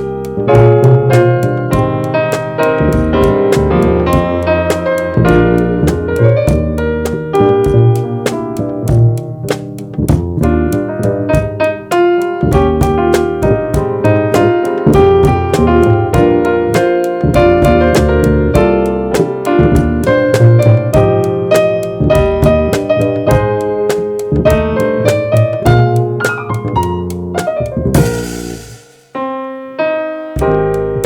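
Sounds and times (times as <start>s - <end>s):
jazz trio playing: 0.0s - 31.0s.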